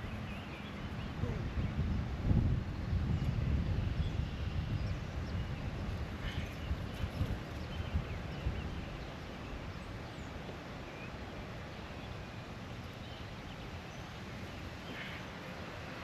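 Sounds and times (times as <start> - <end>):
faint bird calls: 6.2 - 6.8, 14.8 - 15.7.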